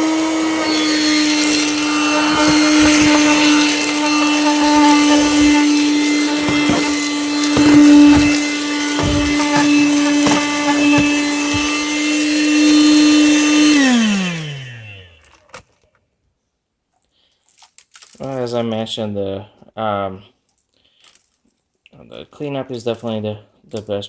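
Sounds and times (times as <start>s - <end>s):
car vacuum whining: 0.0s - 15.3s
clicks and knocks: 2.2s - 11.8s.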